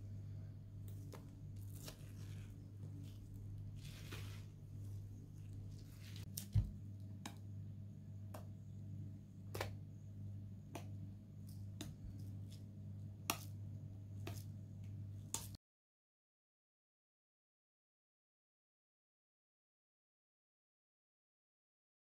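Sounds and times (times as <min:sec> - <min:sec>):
low steady hum: 0:00.0 - 0:15.6.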